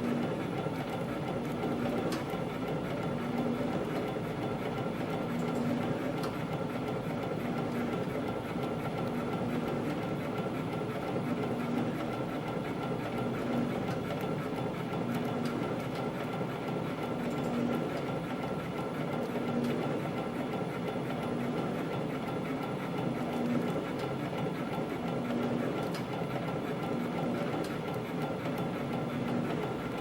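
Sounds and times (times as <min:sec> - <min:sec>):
machine mechanical clatter: 0:21.8 - 0:30.0.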